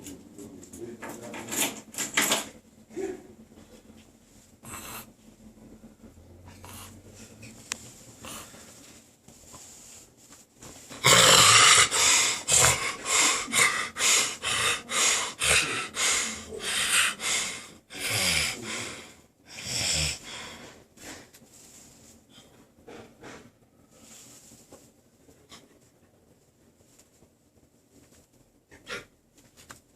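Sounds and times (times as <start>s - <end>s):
man snoring: 11.0s - 20.5s.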